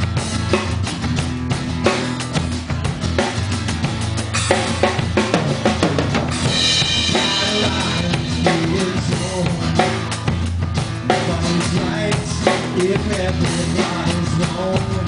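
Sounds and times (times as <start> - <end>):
bass line: 0.0 - 15.0
guitar: 0.0 - 15.0.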